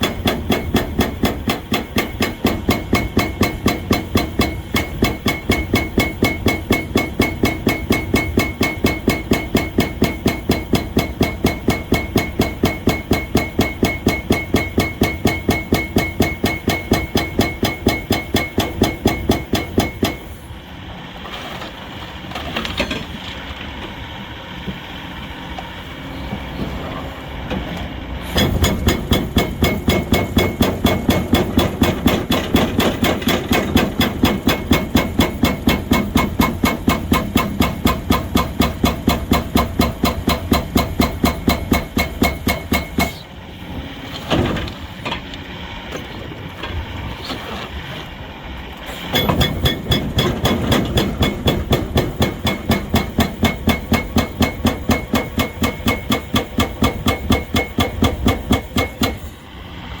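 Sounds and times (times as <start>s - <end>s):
hydraulic breaker hammering: 0.0s - 20.5s, 28.3s - 43.4s, 49.0s - 59.4s
steady machine sound with knocks: 0.0s - 20.5s, 27.5s - 47.0s, 48.8s - 59.5s.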